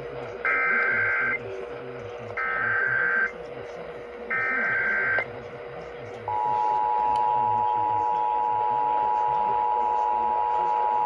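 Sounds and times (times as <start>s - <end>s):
two-tone attention signal: 6.3s - 11.0s.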